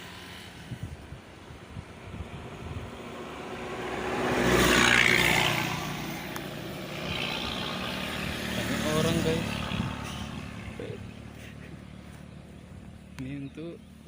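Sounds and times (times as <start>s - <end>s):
car driving past: 2.1s - 13.1s.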